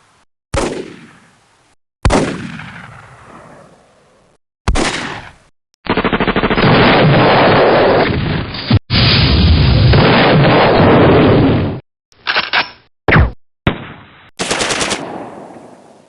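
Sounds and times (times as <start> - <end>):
single gunshot: 0.6 - 1.3, 2.0 - 3.0, 4.7 - 5.4
automatic machine-gun fire: 5.9 - 8.0, 14.4 - 15.2.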